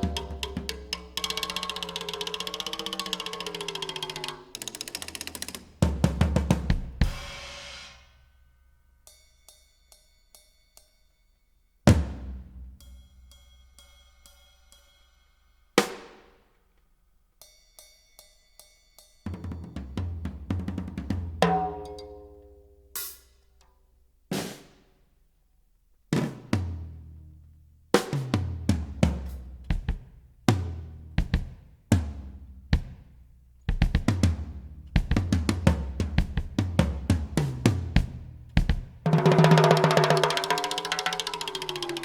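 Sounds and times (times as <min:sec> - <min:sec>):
drum hits through speakers: 0:00.0 - 0:02.0, 0:05.0 - 0:08.0, 0:28.0 - 0:42.0
music: 0:00.0 - 0:25.4, 0:26.1 - 0:42.0.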